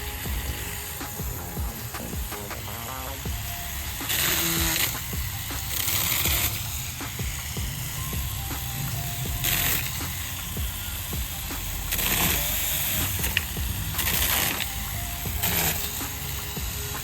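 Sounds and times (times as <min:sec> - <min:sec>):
short bursts of hissing: 0:00.0 - 0:10.5.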